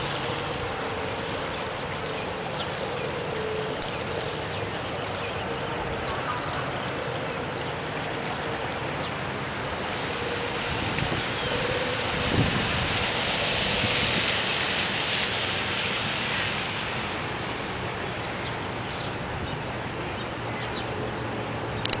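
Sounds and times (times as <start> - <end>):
wind buffeting microphone: 0.0 - 17.4
floodwater rushing: 0.0 - 22.0.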